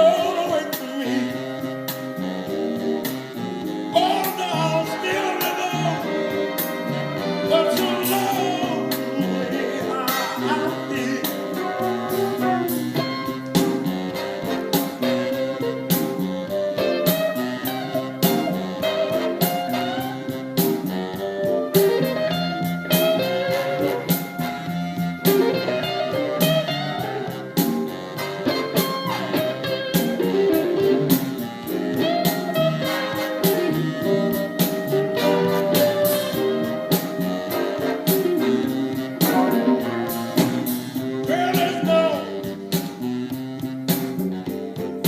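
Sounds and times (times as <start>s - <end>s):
blues band playing: 0.0s - 45.0s
lead guitar bending notes: 1.5s - 45.0s.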